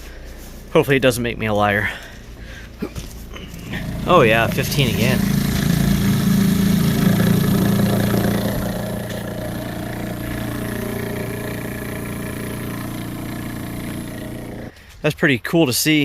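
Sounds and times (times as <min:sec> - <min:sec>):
vacuum pump motor drone: 0:03.0 - 0:14.7.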